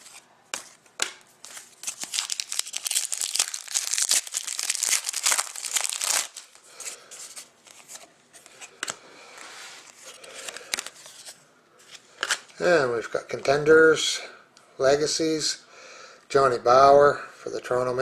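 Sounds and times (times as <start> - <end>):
foil wrapper crinkling and tearing: 1.5 - 6.6.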